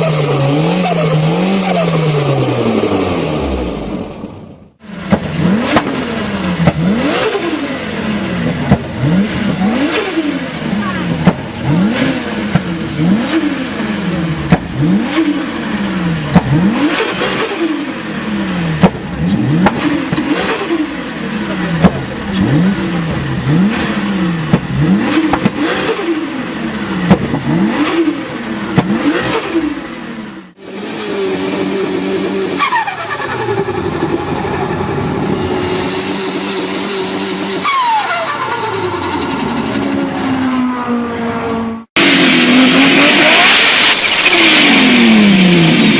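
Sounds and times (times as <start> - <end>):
exhaust cracks: 0.0 - 30.3
car engine pitch falling: 0.0 - 45.9
engine revving: 0.0 - 45.9.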